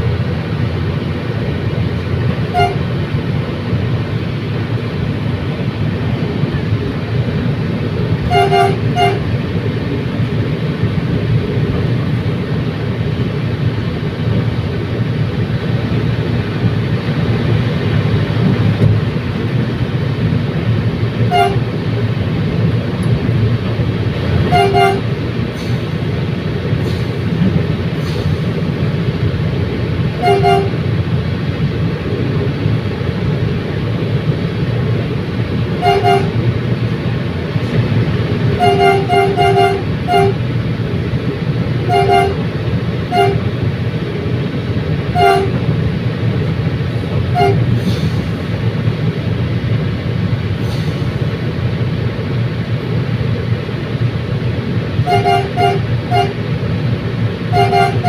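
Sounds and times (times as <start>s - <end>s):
train rumbling: 0.0s - 58.0s
train horn toots: 2.5s - 2.9s, 8.3s - 9.3s, 21.3s - 21.7s, 24.4s - 25.2s, 30.2s - 30.9s, 35.8s - 36.4s, 38.6s - 40.4s, 41.8s - 42.5s, 43.1s - 43.5s, 45.1s - 45.6s, 47.3s - 47.7s, 55.0s - 56.4s, 57.5s - 58.0s.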